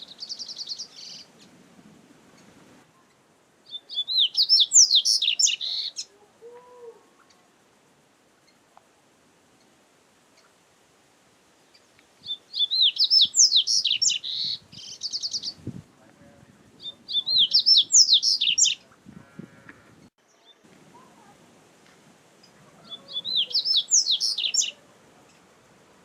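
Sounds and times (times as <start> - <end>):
bird high twittering song: 0.0 - 1.6, 2.3 - 6.1, 11.7 - 15.8, 16.8 - 18.9, 22.4 - 25.4.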